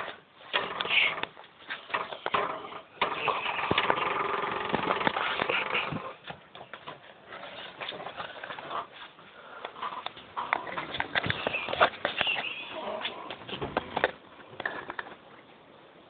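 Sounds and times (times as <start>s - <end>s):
quiet breathing: 8.9s - 10.8s.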